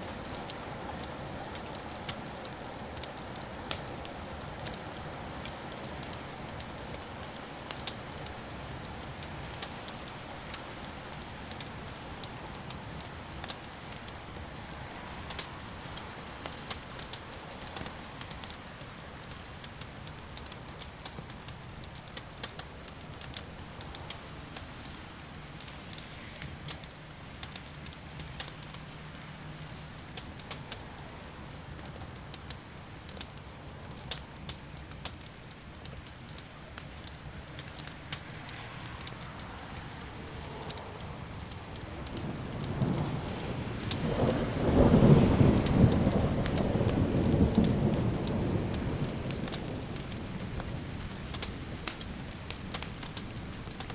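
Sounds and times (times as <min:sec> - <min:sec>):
wood fire crackling: 0:00.0 - 0:53.9
low thunder rumble: 0:39.9 - 0:52.6.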